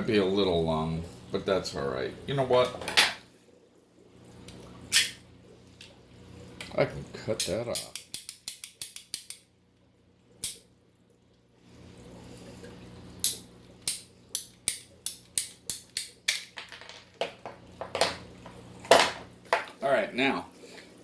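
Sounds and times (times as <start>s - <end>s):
ratcheting pipe cutter clicking: 7.8s - 9.4s.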